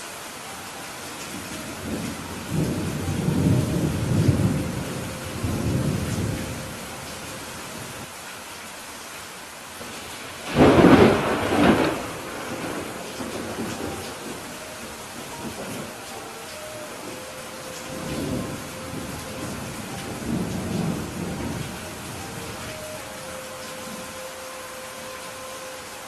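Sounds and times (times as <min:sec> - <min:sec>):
heavy rain: 0:00.0 - 0:26.0
rolling thunder rumble: 0:01.8 - 0:07.0, 0:09.8 - 0:16.0, 0:16.9 - 0:22.8
sharp thunderclap: 0:10.4 - 0:14.0.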